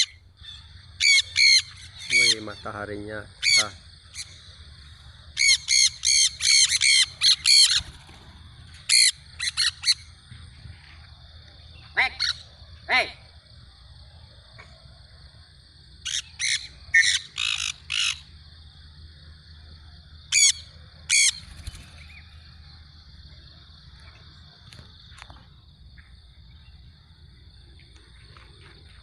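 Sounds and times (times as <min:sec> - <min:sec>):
steady high-pitched buzz: 0:00.0 - 0:29.0
parrot screeching: 0:16.1 - 0:18.2.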